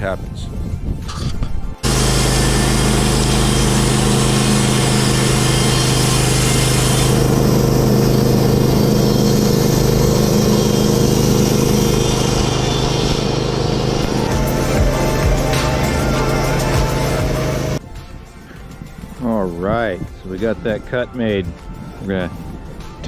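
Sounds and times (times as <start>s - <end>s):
band blade cutting log: 1.8s - 17.8s
sawmill engine running: 1.8s - 17.8s.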